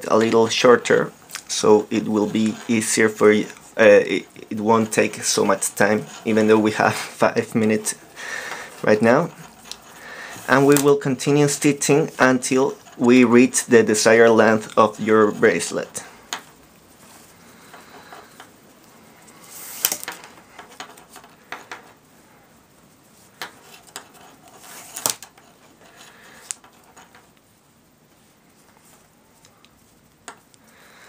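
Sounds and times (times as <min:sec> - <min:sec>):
cord rustling and rubbing: 0:00.0 - 0:30.7.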